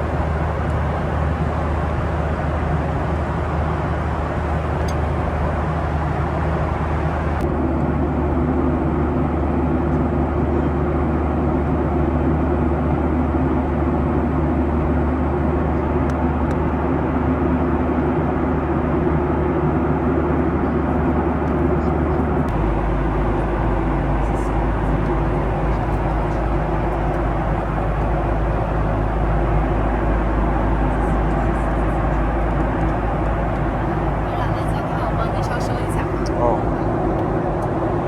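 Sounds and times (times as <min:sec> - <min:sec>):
aircraft cabin rush: 0:00.0 - 0:16.4, 0:21.0 - 0:38.0.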